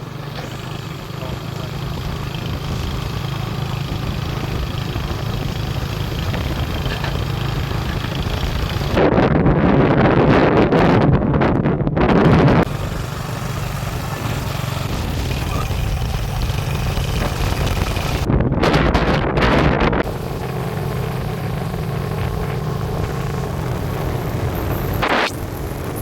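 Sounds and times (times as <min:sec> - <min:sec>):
small engine running: 0:00.0 - 0:09.0, 0:12.6 - 0:18.3, 0:20.0 - 0:26.0
wind buffeting microphone: 0:00.5 - 0:26.0.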